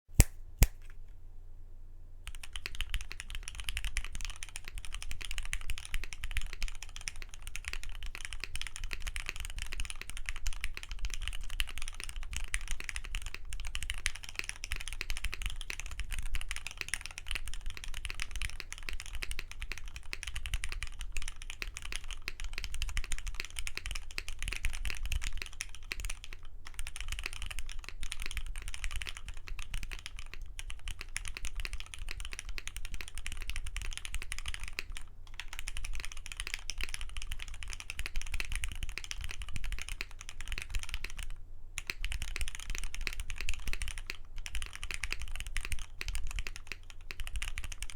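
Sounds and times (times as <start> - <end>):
low steady hum: 0.1 - 2.5
fast mechanical keyboard typing: 2.3 - 47.9.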